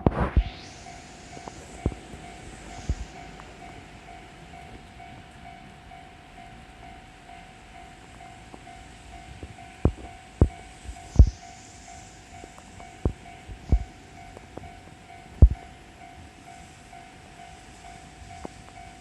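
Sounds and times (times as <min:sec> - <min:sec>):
level-crossing bell clanging: 0:00.8 - 0:19.0
train wheels thumping rail joints: 0:08.1 - 0:11.6, 0:12.4 - 0:15.8.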